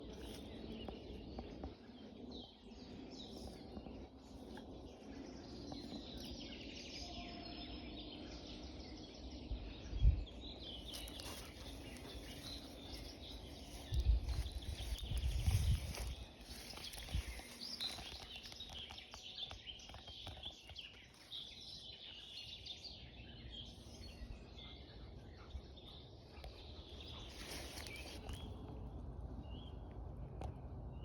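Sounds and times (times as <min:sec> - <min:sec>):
low rumbling on microphone: 0:00.0 - 0:21.1
small birds chirping: 0:00.0 - 0:31.0.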